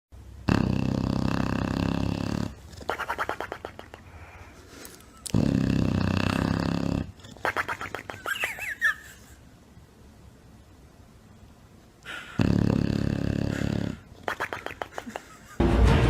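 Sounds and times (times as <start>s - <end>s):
dog snoring: 0.4s - 2.7s, 5.3s - 7.3s, 12.1s - 14.1s.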